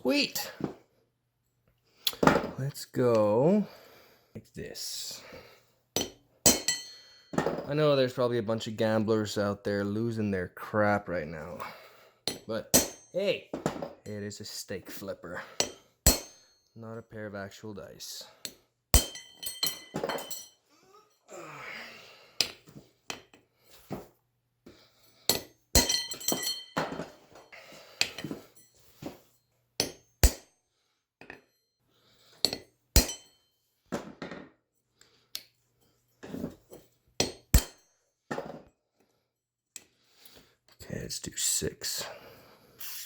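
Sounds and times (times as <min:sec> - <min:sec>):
hammer striking metal punch: 0:16.1 - 0:16.4, 0:29.8 - 0:30.5, 0:32.5 - 0:33.3, 0:37.2 - 0:37.8.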